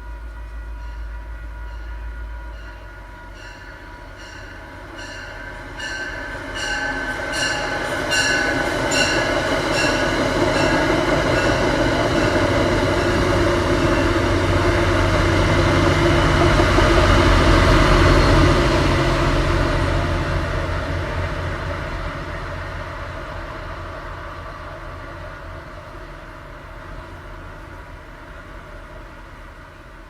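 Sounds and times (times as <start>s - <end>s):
train passing: 0.0s - 30.0s
rhythmic ringing clank: 0.7s - 14.6s.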